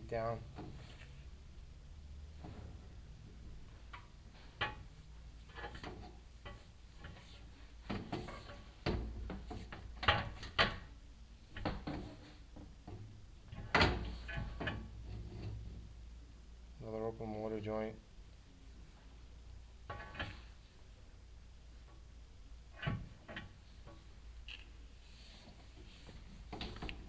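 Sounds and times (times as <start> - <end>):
low steady hum: 0.0 - 7.8.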